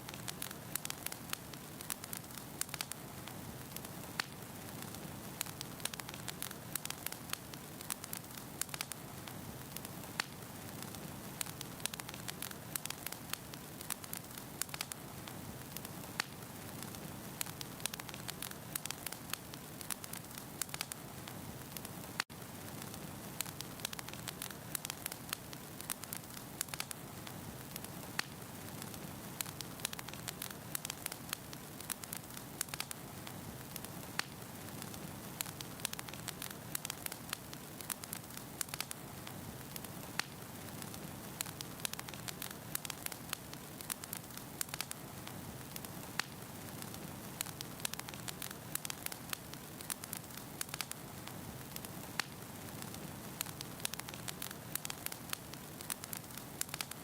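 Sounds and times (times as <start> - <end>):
fire hissing: 0.0 - 57.0.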